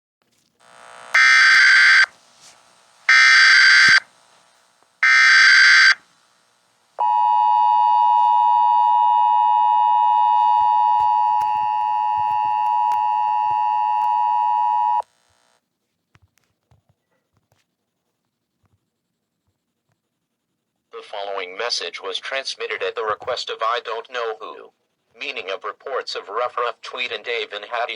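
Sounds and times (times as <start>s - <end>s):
screeching digital data bursts: 0.8s - 2.1s, 3.1s - 4.0s.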